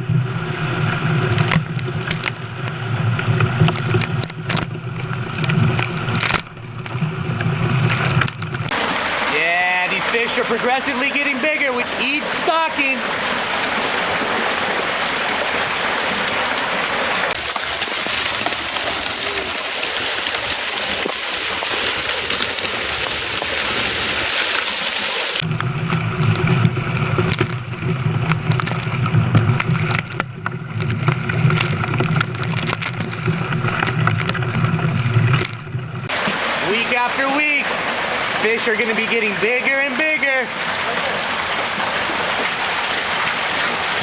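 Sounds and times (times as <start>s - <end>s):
water rushing and splashing: 0.0s - 44.0s
quick sharp splashes: 8.6s - 25.4s, 36.1s - 44.0s.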